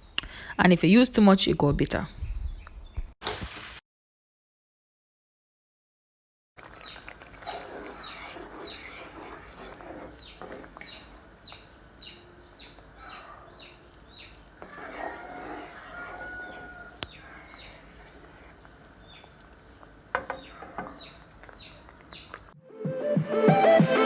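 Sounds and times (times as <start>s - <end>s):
chickens clucking: 6.6s - 22.6s
chicks peeping: 10.1s - 14.6s, 15.9s - 22.5s.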